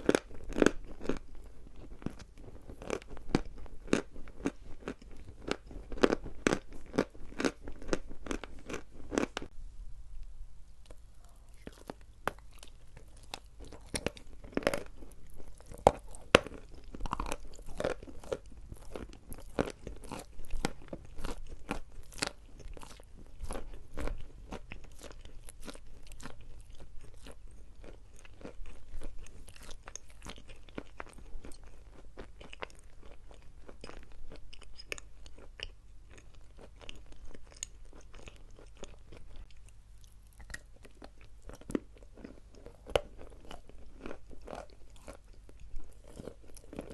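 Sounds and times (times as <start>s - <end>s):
chalk being chewed: 10.8s - 46.9s.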